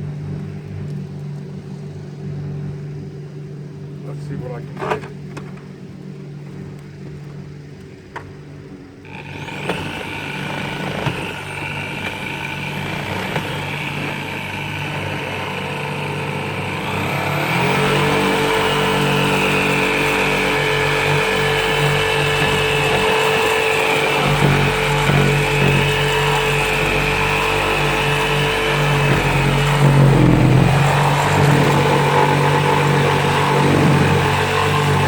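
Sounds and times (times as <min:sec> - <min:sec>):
motor humming: 0:09.0 - 0:35.0.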